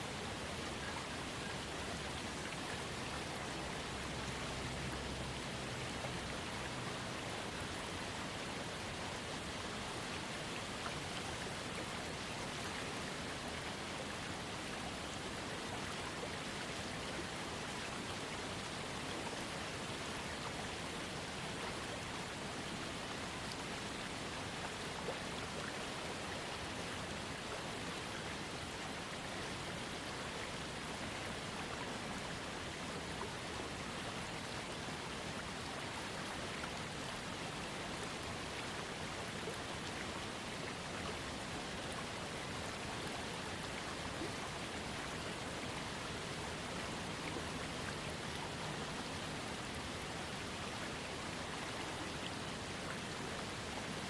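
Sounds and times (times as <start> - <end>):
small waterfall splashing: 0.0 - 54.0.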